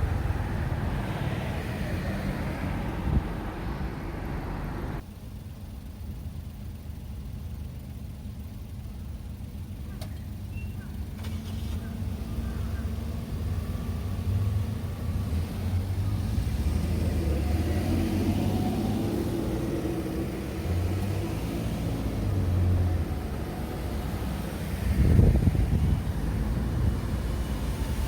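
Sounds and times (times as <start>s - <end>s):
road traffic passing: 0.0s - 5.0s, 8.4s - 28.0s
vehicle passing close: 0.0s - 5.0s.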